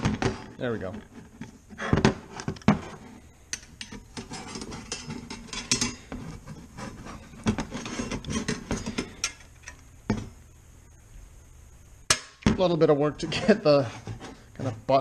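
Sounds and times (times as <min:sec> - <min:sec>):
metal scraping and rubbing: 0:00.0 - 0:09.8, 0:13.2 - 0:15.0
metal plates clinking and knocking: 0:01.9 - 0:06.3.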